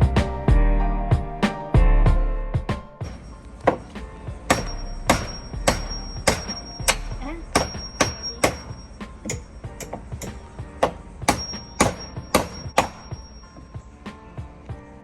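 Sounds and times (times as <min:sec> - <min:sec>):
hammer striking: 0:03.0 - 0:13.8.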